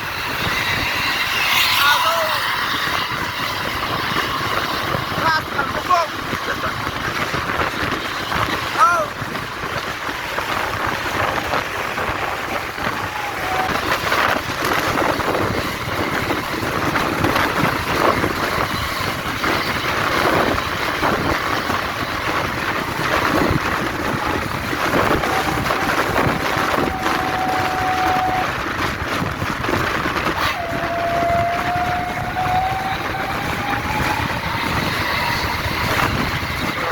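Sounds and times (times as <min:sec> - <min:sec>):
road traffic noise: 0:00.0 - 0:36.9
wind buffeting microphone: 0:00.0 - 0:36.9
high horn tone: 0:11.2 - 0:18.1, 0:24.2 - 0:28.9, 0:30.3 - 0:36.9.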